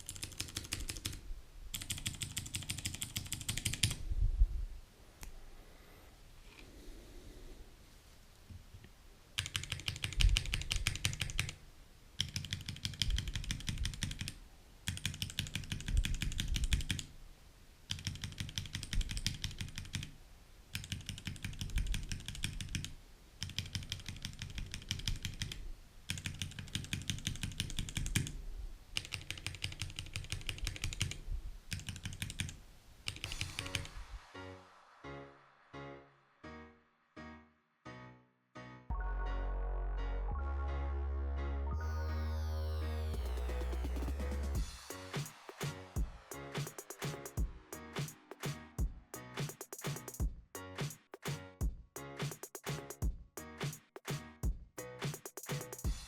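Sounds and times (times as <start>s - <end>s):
mechanical keyboard typing: 0.0s - 4.0s, 9.4s - 11.6s, 12.2s - 17.1s, 17.9s - 20.1s, 20.7s - 28.3s, 29.0s - 33.9s
music: 33.3s - 56.0s.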